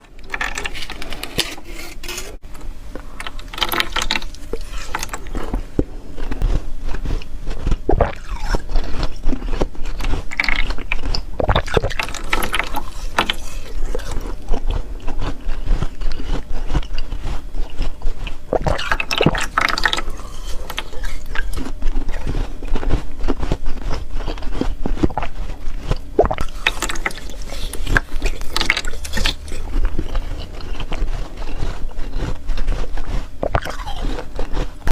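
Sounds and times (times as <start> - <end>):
chewing and crunching ice: 0.0 - 2.4, 3.0 - 34.9.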